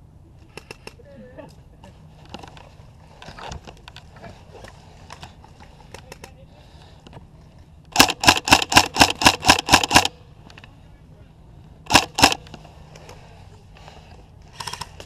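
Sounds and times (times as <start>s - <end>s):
airsoft gun firing rapid shots: 7.9s - 10.1s, 11.9s - 12.4s.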